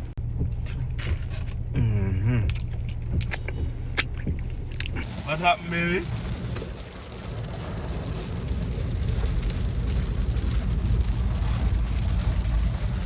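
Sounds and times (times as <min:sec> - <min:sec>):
car engine and road noise: 0:00.0 - 0:05.1.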